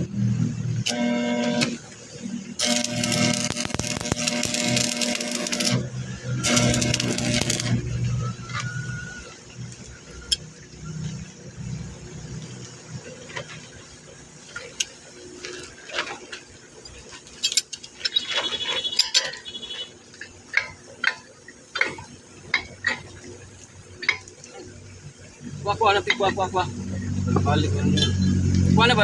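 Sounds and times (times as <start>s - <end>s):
metal tools clinking: 16.9s - 19.5s
metal ringing clang: 27.9s - 28.4s.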